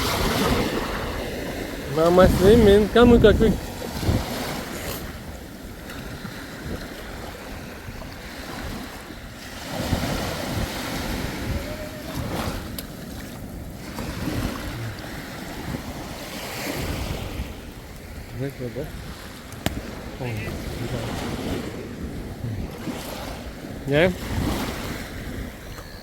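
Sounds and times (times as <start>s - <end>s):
water sloshing and splashing: 0.0s - 26.0s
wind buffeting microphone: 0.0s - 26.0s.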